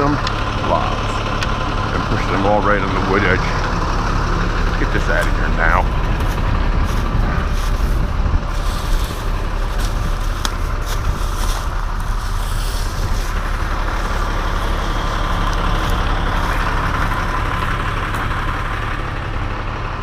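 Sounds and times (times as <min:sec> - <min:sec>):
truck engine running: 0:00.0 - 0:20.0.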